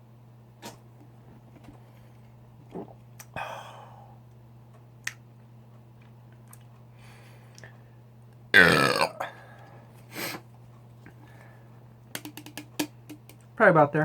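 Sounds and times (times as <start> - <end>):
low steady hum: 0.0 - 14.0
loud burp: 8.5 - 9.4.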